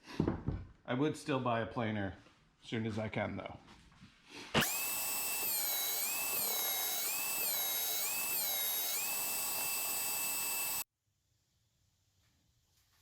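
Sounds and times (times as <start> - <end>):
power tool motor whining: 4.6 - 10.9.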